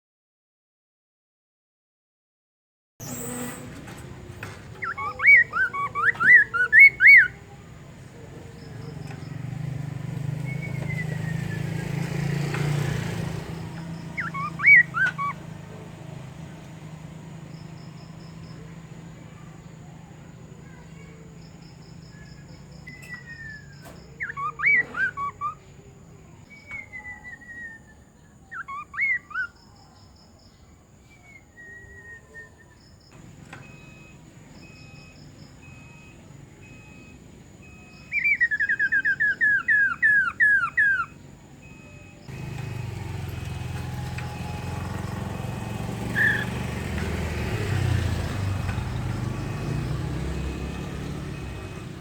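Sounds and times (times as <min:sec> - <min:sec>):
bird singing whistled phrases: 0:04.8 - 0:07.4, 0:10.4 - 0:12.0, 0:13.7 - 0:15.4, 0:22.1 - 0:25.7, 0:26.4 - 0:29.8, 0:31.0 - 0:32.9, 0:36.7 - 0:42.3, 0:46.0 - 0:46.6.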